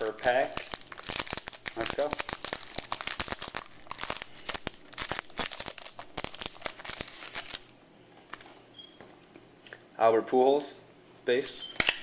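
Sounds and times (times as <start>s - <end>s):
plastic wrapper tearing and crinkling: 0.0s - 7.8s.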